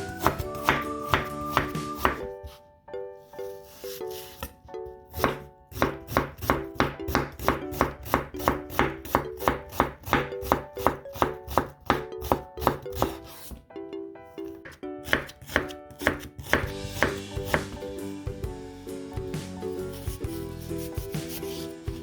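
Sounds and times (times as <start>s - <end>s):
knife chopping on cutting board: 0.0s - 2.6s, 5.1s - 13.6s, 15.0s - 18.0s, 19.4s - 22.0s
light background music: 0.0s - 22.0s.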